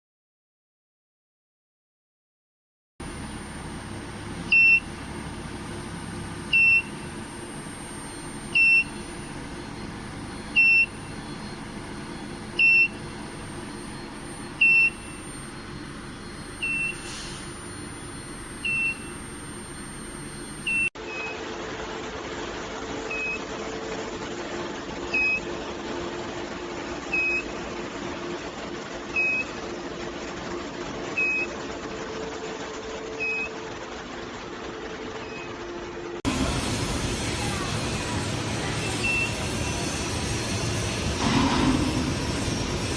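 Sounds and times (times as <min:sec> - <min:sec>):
electronic beeper beeping: 0:03.0 - 0:21.4, 0:38.8 - 0:39.9, 0:41.2 - 0:42.9
machine hum: 0:03.0 - 0:42.9.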